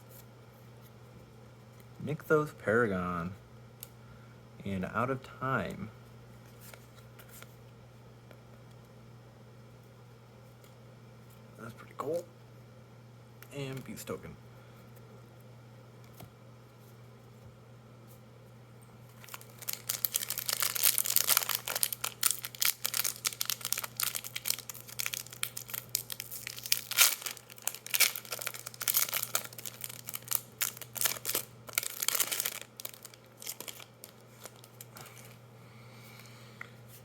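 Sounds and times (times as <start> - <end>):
foil wrapper tearing and crinkling: 19.1 - 35.4.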